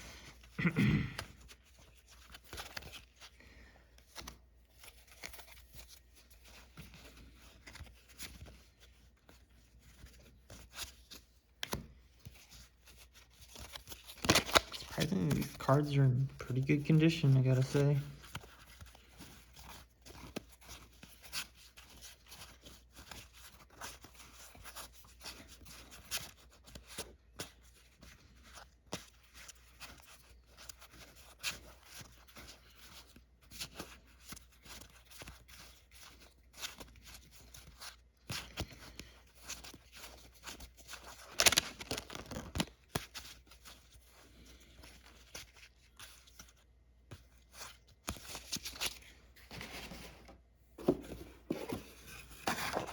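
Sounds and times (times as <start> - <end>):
trading cards clicking and rustling: 9.9 - 27.0, 33.6 - 43.9, 50.8 - 52.9.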